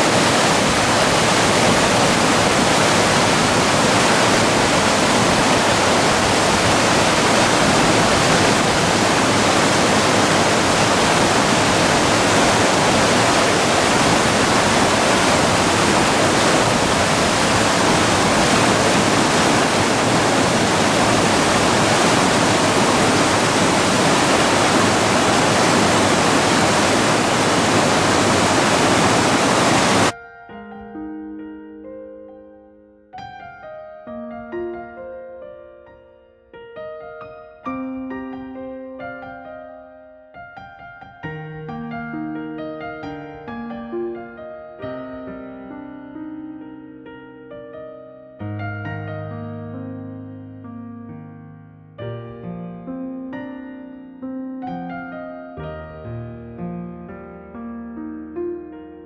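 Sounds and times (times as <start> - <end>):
river water rushing with roar: 0.0 - 30.2
soft piano music: 0.0 - 59.0.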